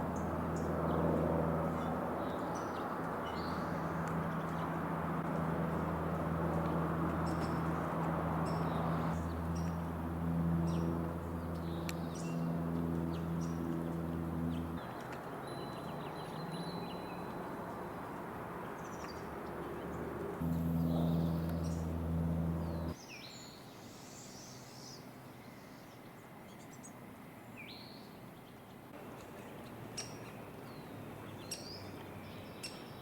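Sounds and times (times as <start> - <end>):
low mechanical hum: 0.0 - 14.9, 19.4 - 23.0
small birds chirping: 6.6 - 17.4, 18.8 - 23.0.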